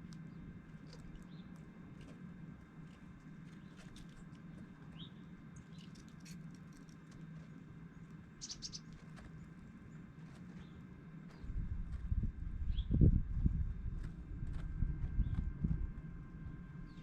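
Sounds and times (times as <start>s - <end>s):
steady low hum: 0.0s - 17.0s
bird chip calls: 8.4s - 9.1s.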